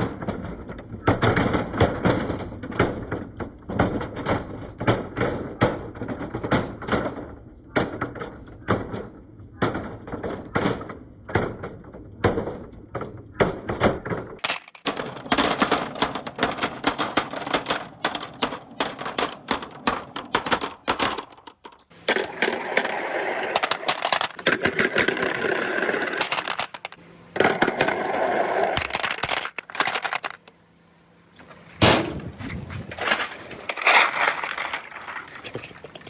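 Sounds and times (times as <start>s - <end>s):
marbles clattering on marble run: 14.4s - 30.5s, 32.9s - 36.0s.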